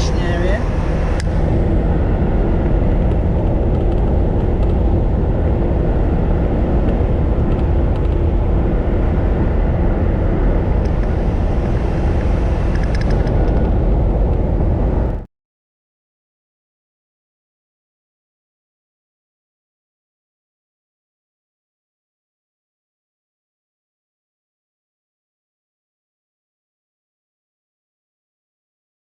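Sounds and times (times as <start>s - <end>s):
vehicle rumbling on the move: 0.0s - 15.3s.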